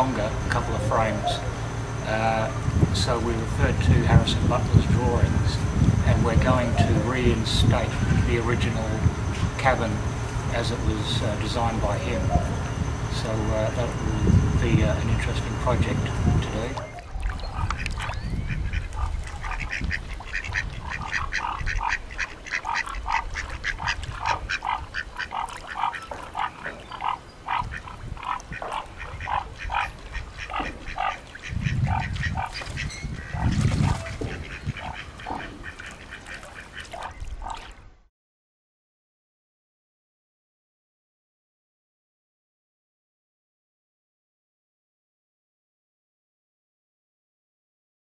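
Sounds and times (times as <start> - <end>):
wind rumble on microphone: 0.0 - 22.2, 22.8 - 25.4, 26.6 - 35.8
duck quacking: 17.5 - 37.6.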